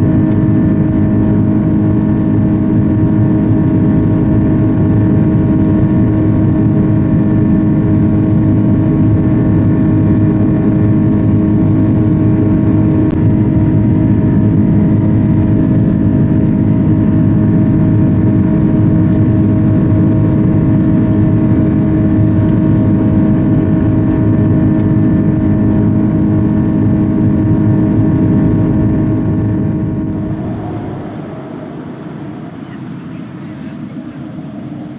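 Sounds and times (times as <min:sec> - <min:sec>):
constant low hum: 0:00.0 - 0:34.9
airplane cabin rush: 0:28.4 - 0:34.9.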